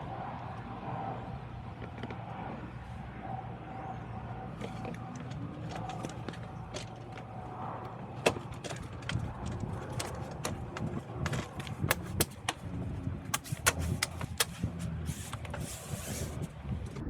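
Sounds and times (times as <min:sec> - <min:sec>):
plastic clips snapping into place: 0:08.3 - 0:12.7, 0:13.3 - 0:16.2.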